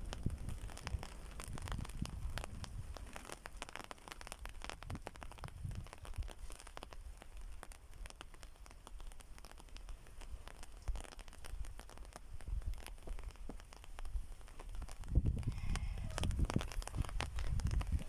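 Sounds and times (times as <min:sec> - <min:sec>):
low thunder rumble: 0:00.0 - 0:03.1, 0:15.0 - 0:18.0
raindrops tapping: 0:00.0 - 0:18.0.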